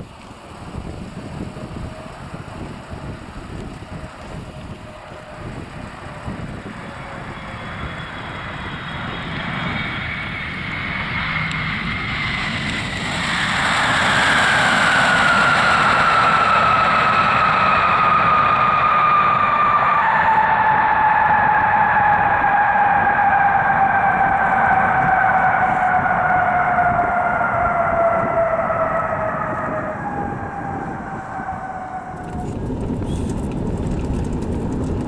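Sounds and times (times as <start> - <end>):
jet airliner engines passing: 0.0 - 35.0
high whine sliding down: 1.6 - 35.0.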